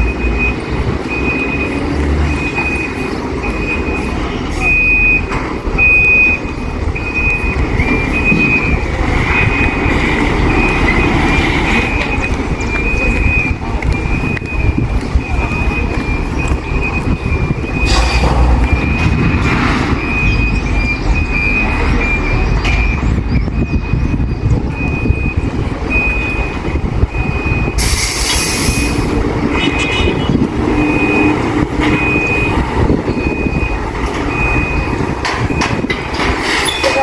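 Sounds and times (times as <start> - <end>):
truck backup alarm beeping: 0.0 - 37.0
truck engine rumble: 0.0 - 37.0.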